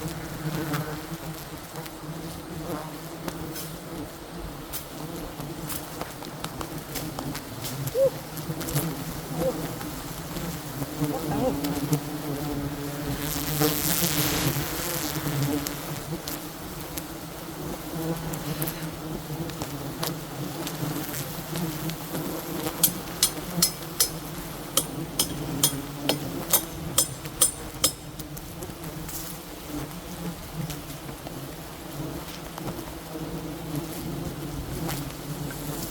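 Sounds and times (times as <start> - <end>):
bees buzzing: 8.1 - 16.6, 20.6 - 29.0
sharp knocks: 22.8 - 28.2.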